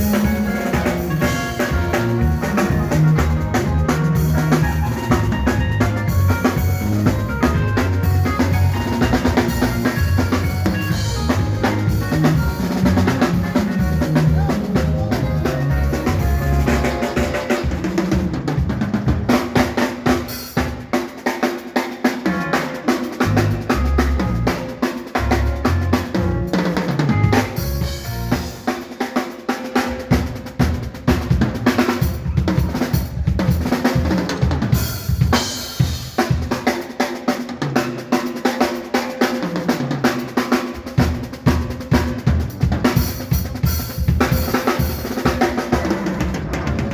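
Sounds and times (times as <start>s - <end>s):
bass line: 0.0s - 17.7s, 23.2s - 28.5s
band playing groove: 0.0s - 46.9s
drum kit with snare: 0.0s - 46.9s.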